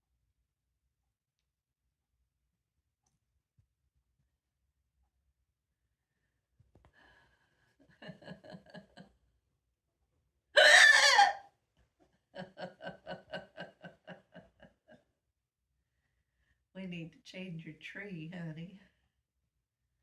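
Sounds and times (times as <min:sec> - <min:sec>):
person laughing: 0:08.0 - 0:09.0, 0:12.4 - 0:15.0.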